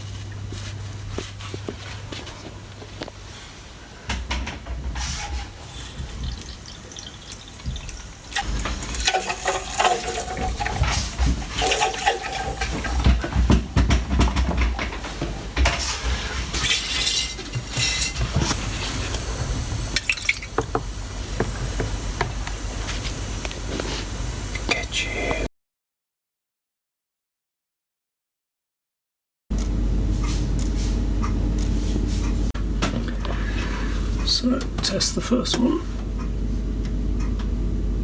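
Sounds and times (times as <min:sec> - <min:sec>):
water running: 0:05.0 - 0:14.8, 0:16.5 - 0:25.5.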